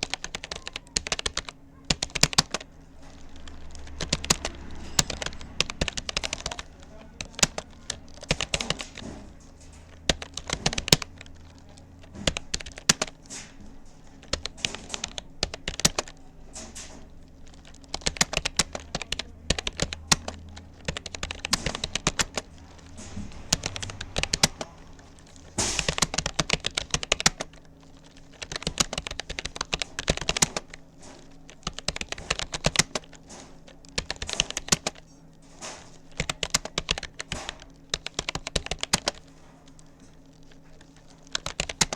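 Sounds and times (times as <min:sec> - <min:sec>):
keyboard key clicks: 0:10.1 - 0:13.2, 0:14.2 - 0:30.8, 0:34.0 - 0:35.0, 0:36.1 - 0:39.3.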